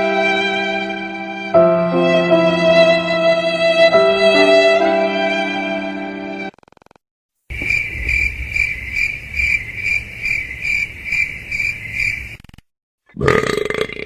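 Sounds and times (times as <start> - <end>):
cricket chirping: 7.5 - 12.5.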